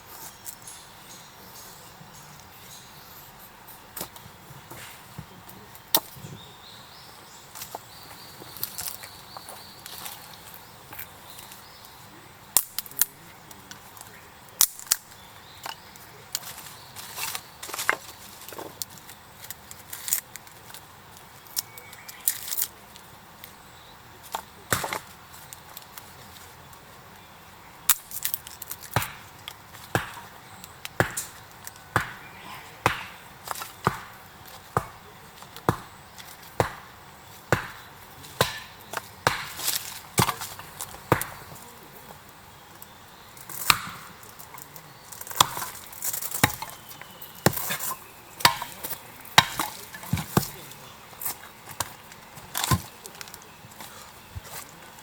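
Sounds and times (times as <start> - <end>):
blade striking wood: 27.9 - 30.3, 30.9 - 34.2, 35.6 - 36.9, 37.5 - 41.6, 43.6 - 50.8.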